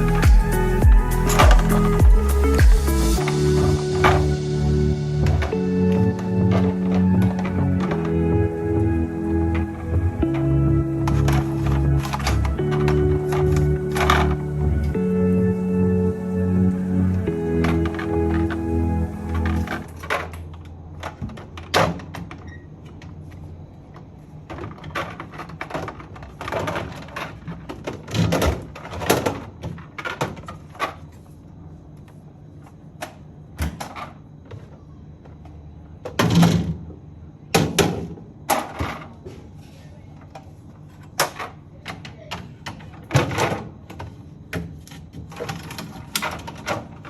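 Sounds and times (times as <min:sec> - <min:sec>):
items moved in a refrigerator: 0:19.4 - 0:37.0, 0:37.6 - 0:47.0.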